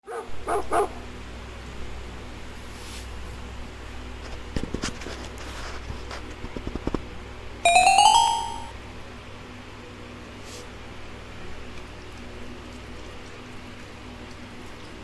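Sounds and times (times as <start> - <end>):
rising electronic chime: 7.7 - 8.8.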